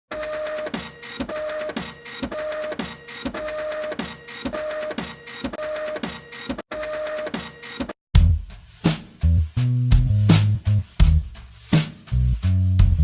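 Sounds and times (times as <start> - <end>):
electronic music loop: 8.2 - 13.0.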